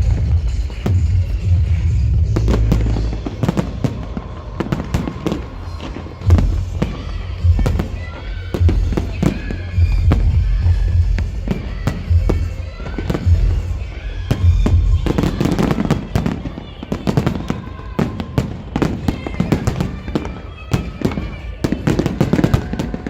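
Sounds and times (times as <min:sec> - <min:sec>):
electronic dance music: 0:00.0 - 0:18.1
fireworks bangs and cracks: 0:00.0 - 0:23.0.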